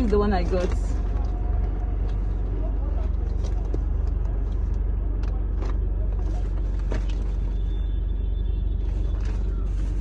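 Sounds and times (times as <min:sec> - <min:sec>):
faint clicks and rustles: 0:00.0 - 0:07.9
car engine rumbling: 0:00.0 - 0:10.0.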